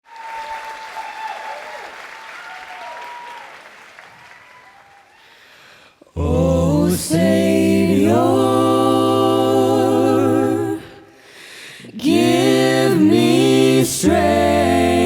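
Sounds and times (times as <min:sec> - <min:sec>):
people cheering: 0:00.0 - 0:05.2
audience applause: 0:00.0 - 0:05.3
a cappella vocal group singing: 0:06.2 - 0:15.0.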